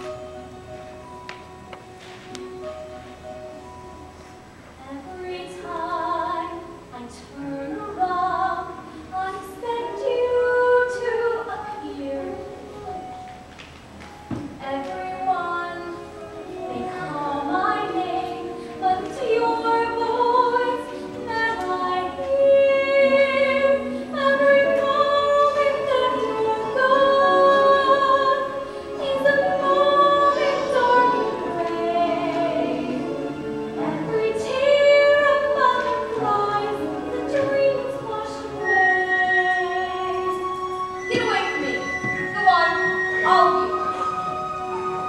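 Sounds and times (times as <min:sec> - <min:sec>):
woman singing a ballad: 0:04.8 - 0:12.5, 0:14.6 - 0:32.8, 0:33.8 - 0:40.5.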